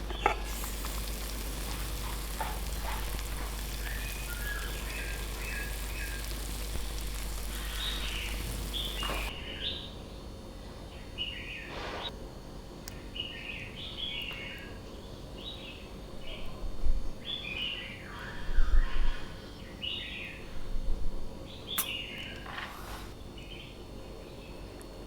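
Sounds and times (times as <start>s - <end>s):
birds chirping: 0.0s - 9.8s.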